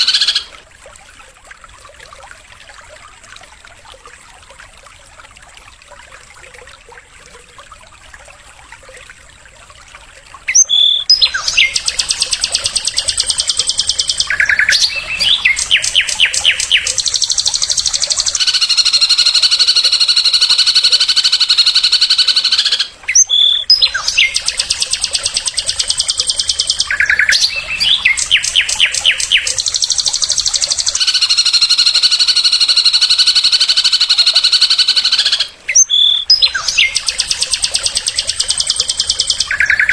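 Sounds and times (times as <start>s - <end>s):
songbird singing with buzzy trill: 0.0s - 0.5s, 10.5s - 39.9s.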